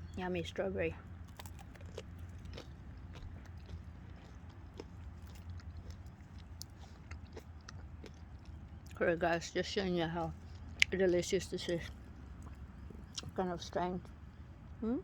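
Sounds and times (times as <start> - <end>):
steady low hum: 0.0 - 15.0
hard candy crunching: 1.2 - 9.0
mouth chewing sounds: 1.2 - 13.4.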